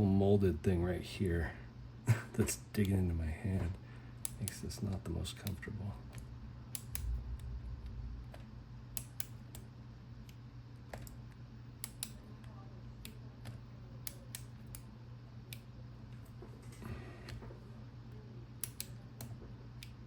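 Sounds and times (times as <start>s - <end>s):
low steady hum: 0.0s - 20.0s
combination lock dial clicks: 9.0s - 9.7s, 11.8s - 12.2s, 18.6s - 20.0s.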